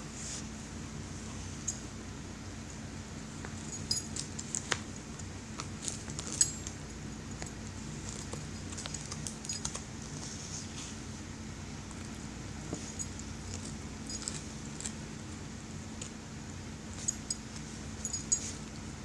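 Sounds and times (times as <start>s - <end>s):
steady low hum: 0.0s - 19.0s
dog chewing on a bone: 3.5s - 10.4s, 11.8s - 15.3s.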